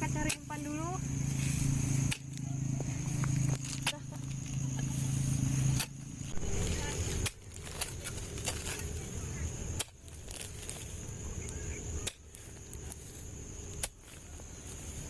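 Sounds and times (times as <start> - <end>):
low rumble: 0.0 - 11.9
shovel chopping into ground: 1.3 - 2.5, 5.7 - 9.0, 9.7 - 11.0, 11.9 - 15.0.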